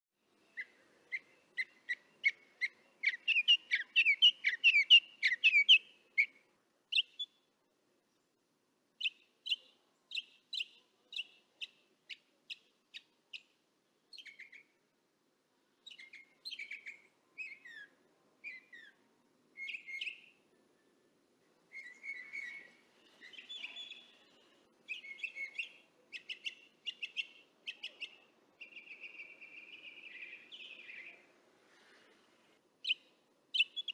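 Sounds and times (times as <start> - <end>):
mockingbird singing: 0.5 - 6.3, 21.7 - 31.2, 32.8 - 33.9.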